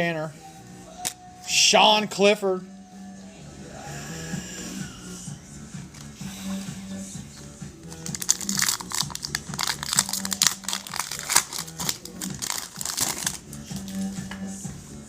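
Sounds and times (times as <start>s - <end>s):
background music: 0.0s - 15.0s
foil wrapper crinkling and tearing: 7.9s - 14.0s.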